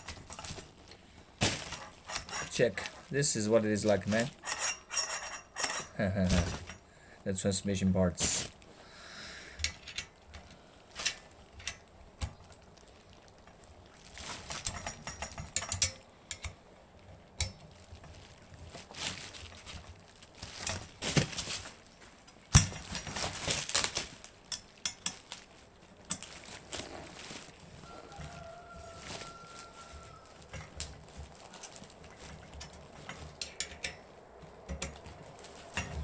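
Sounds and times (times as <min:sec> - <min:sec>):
metal tools clinking and knocking: 0:01.6 - 0:06.8, 0:09.6 - 0:10.2, 0:14.6 - 0:16.6, 0:31.6 - 0:36.0.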